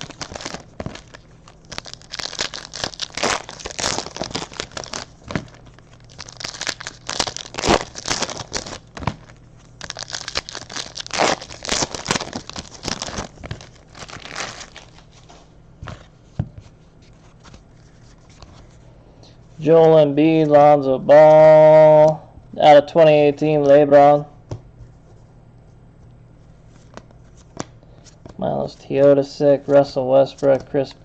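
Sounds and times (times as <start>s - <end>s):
foil wrappers crinkling: 0.0s - 15.4s.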